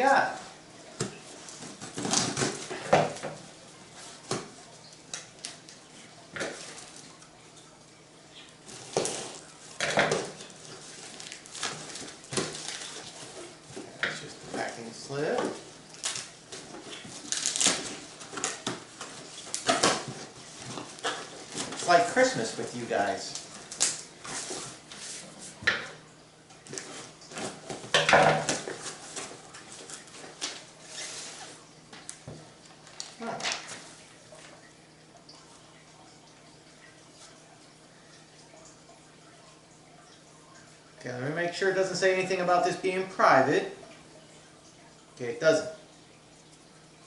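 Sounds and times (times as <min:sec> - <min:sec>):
packaging rustling and crinkling: 0:08.7 - 0:25.2.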